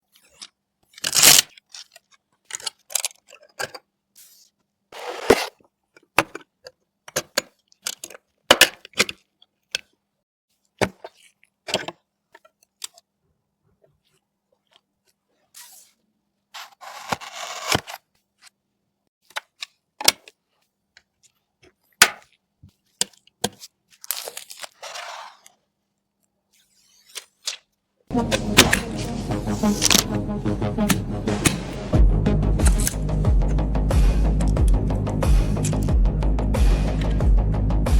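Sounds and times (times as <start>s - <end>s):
plastic and cardboard clicking: 0.2s - 3.9s, 5.1s - 10.0s, 19.2s - 20.4s
packaging tearing rustles: 0.9s - 3.2s, 23.6s - 25.6s.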